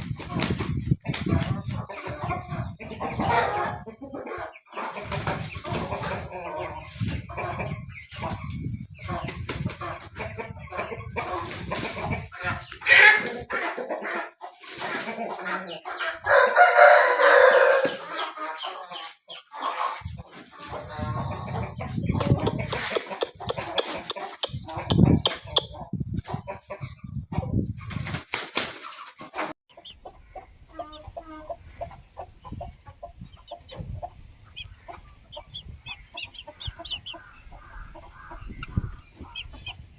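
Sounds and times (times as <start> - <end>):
small birds chirping: 0.0 - 13.2, 17.6 - 28.0, 28.8 - 39.9
chickens clucking: 0.0 - 39.9
loud chicken squawk: 1.4 - 6.8, 12.2 - 21.5
rooster crowing: 16.2 - 18.0.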